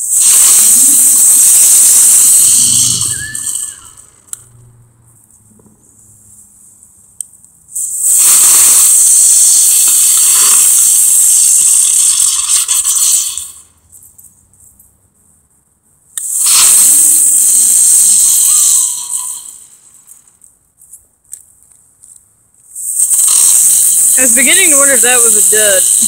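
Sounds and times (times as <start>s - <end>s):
firework fountain hissing: 0.0s - 4.2s, 7.7s - 13.8s, 16.2s - 20.3s, 22.7s - 26.0s.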